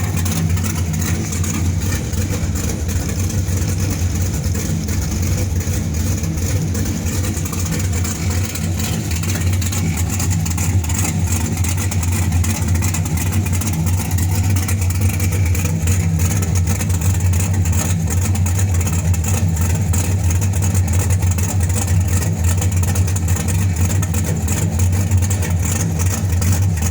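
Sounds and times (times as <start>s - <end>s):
car engine idling: 0.0s - 26.9s.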